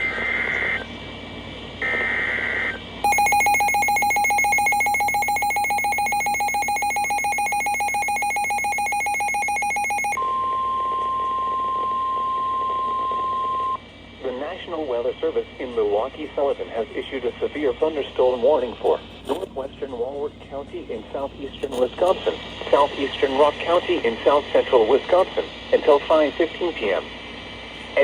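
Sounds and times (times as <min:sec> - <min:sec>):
shrill data burst: 0:00.0 - 0:00.8, 0:01.8 - 0:10.2.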